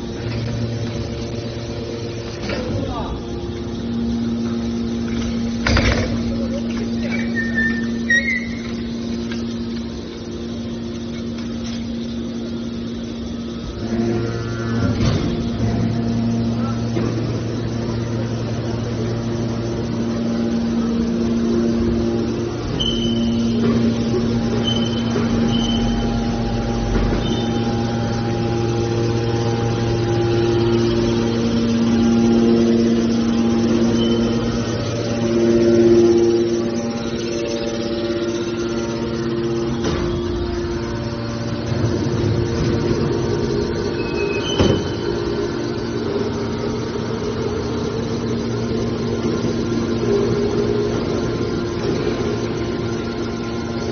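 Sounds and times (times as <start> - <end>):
hydraulic machine hum: 0.0 - 53.9
high squeal: 6.6 - 9.1, 21.2 - 53.9.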